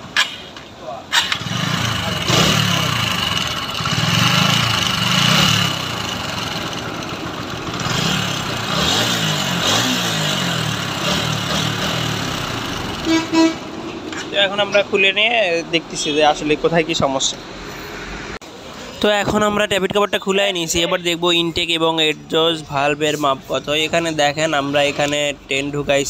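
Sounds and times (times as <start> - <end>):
motorcycle engine revving: 1.1 - 13.6.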